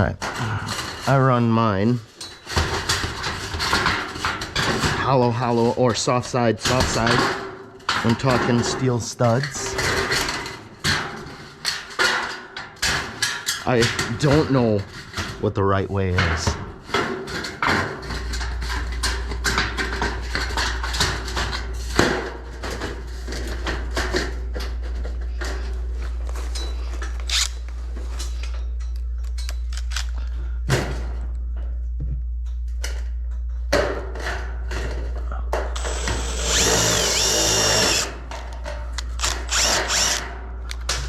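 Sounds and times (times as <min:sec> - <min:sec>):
steady low hum: 0:00.0 - 0:41.0
cordless drill driving screws: 0:35.8 - 0:38.2, 0:39.2 - 0:40.3.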